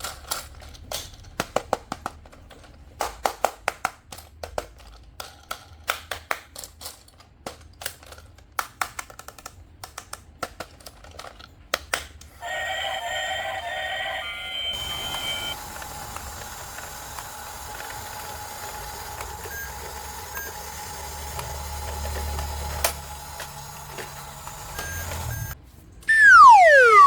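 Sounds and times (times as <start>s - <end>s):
loud falling whistle: 12.4s - 15.6s, 26.1s - 27.0s
electronic beeping: 13.2s - 15.6s, 24.7s - 27.0s.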